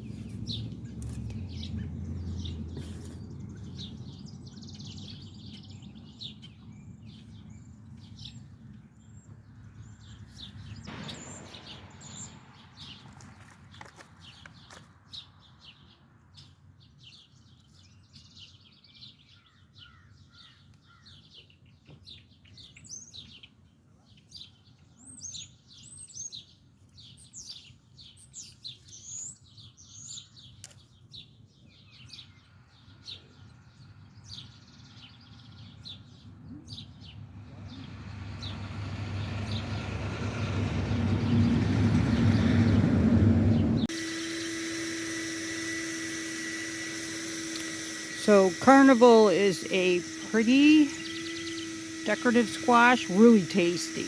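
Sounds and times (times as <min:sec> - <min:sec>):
small birds chirping: 0:00.0 - 0:43.9, 0:47.5 - 0:54.0
rumbling noise: 0:10.9 - 0:12.6.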